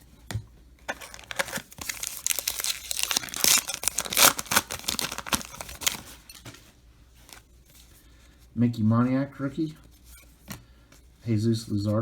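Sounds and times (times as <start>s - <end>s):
plastic wrapper ripping: 0.9s - 6.2s
plastic wrapper crinkling: 0.9s - 6.4s.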